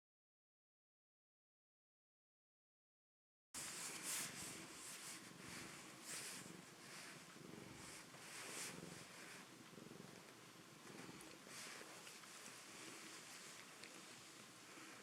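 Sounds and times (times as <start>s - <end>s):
soft breathy hisses: 3.6s - 10.1s, 10.8s - 15.0s
cat purring: 3.6s - 15.0s.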